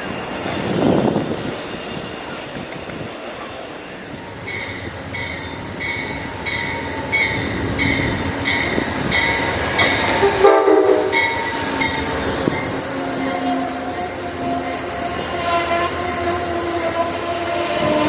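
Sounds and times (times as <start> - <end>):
train rumbling: 0.0 - 18.0
bell ringing steadily: 4.4 - 10.2, 11.1 - 12.8
short train horn blast: 10.2 - 12.0, 12.9 - 18.0.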